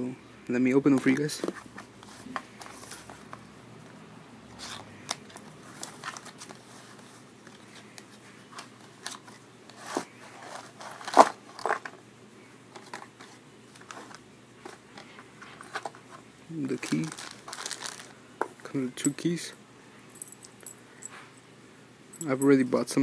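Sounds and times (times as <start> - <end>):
packaging rustling: 4.6 - 11.9, 12.8 - 18.6.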